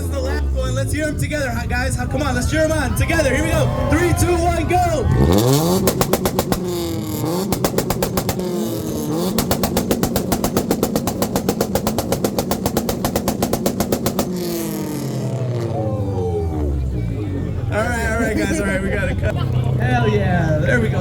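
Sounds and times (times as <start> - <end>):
engines bouncing off limiter: 0.0 - 21.0
rattling exhaust pops: 0.7 - 15.8.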